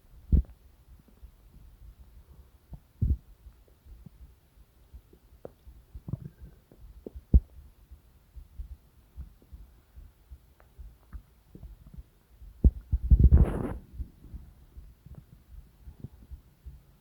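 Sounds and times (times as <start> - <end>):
stomach gurgling: 6.0 - 7.6.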